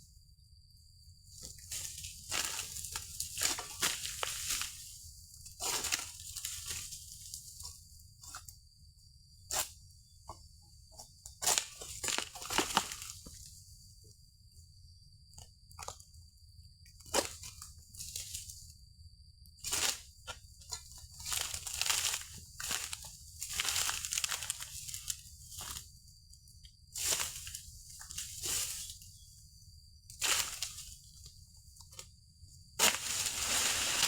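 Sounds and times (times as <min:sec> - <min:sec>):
sickle crunching through stalks: 0:01.8 - 0:04.9, 0:11.4 - 0:13.3, 0:21.2 - 0:25.8, 0:30.2 - 0:31.0, 0:32.8 - 0:34.0.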